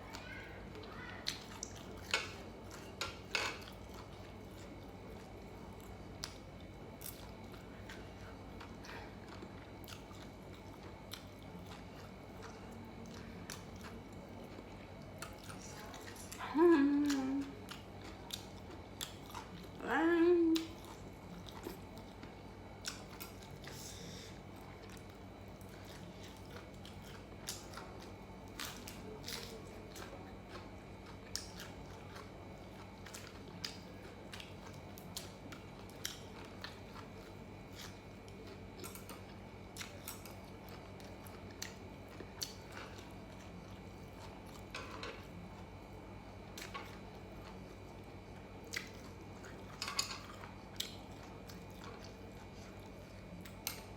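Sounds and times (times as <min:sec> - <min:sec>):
chewing mouth sounds: 0:03.5 - 0:19.8, 0:24.6 - 0:53.9
person humming mm: 0:16.4 - 0:17.6, 0:19.8 - 0:20.8.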